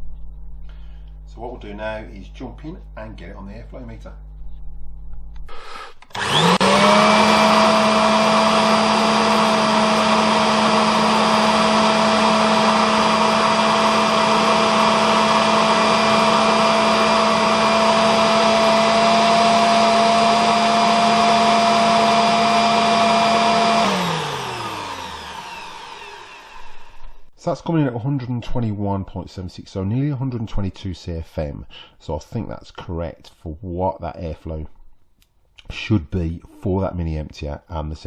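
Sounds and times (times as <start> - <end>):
vacuum motor and fan running: 6.1 - 27.3.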